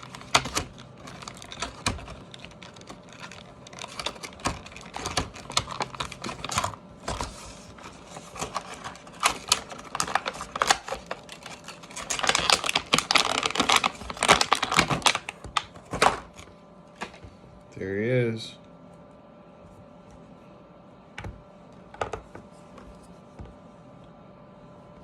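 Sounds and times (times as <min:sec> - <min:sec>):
plastic and cardboard crackling: 0:00.0 - 0:17.3.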